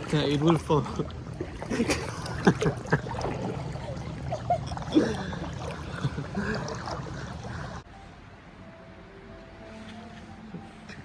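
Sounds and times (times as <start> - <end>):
seawater sloshing and splashing: 0.0 - 7.8.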